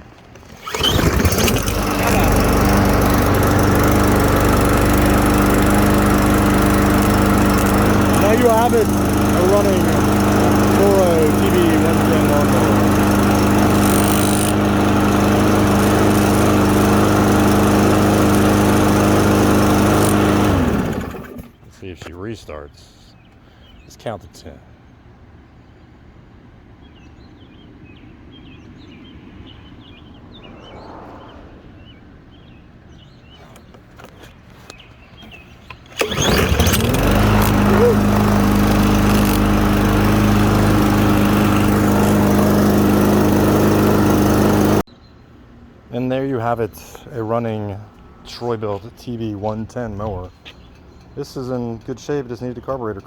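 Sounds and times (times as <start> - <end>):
lawn mower engine running: 0.0 - 21.7, 34.0 - 44.9.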